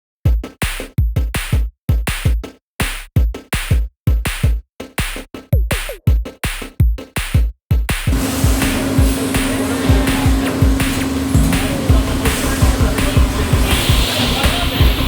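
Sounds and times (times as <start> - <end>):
drum machine hits: 0.3 - 15.0
noisy background with low hum: 8.1 - 15.0.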